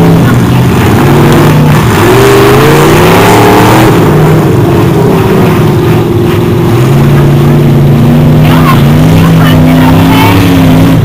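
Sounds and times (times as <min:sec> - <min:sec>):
truck engine revving high: 0:00.0 - 0:11.0.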